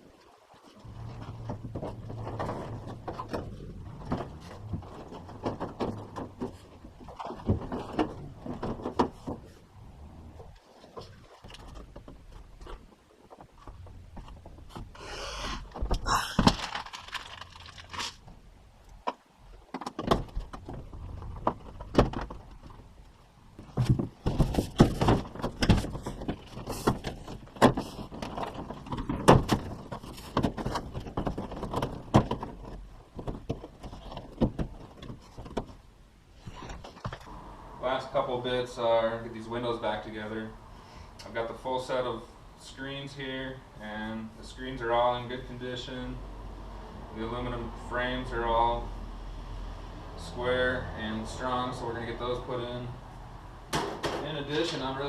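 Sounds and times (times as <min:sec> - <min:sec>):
rustling: 0:00.1 - 0:37.3.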